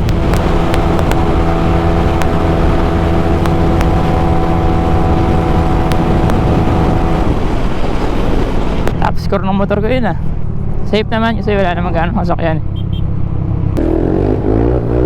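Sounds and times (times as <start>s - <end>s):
motorcycle engine at high revs: 0.0s - 9.0s, 13.8s - 15.0s
wind rumble on microphone: 0.0s - 12.8s.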